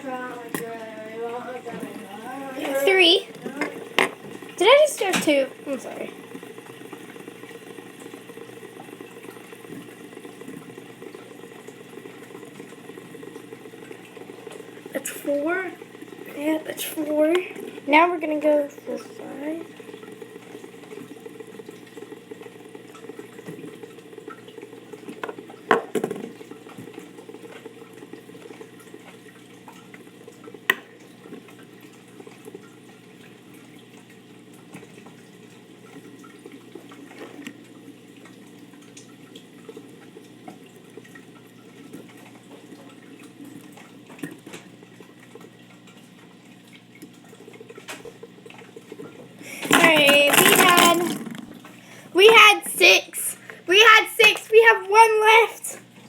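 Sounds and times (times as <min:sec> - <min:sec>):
fidget spinners clicking and knocking: 0:00.0 - 0:07.4, 0:49.4 - 0:55.8.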